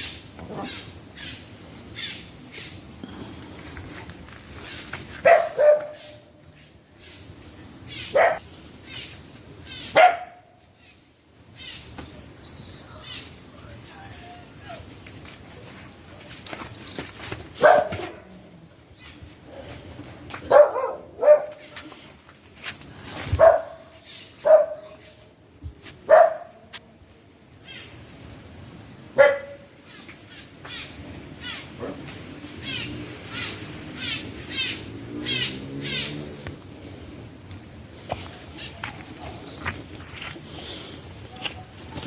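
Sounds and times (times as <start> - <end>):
dog barking: 5.2 - 6.2, 8.1 - 8.4, 9.9 - 10.5, 17.6 - 18.2, 20.5 - 21.7, 23.4 - 25.0, 26.1 - 26.6, 29.2 - 29.7.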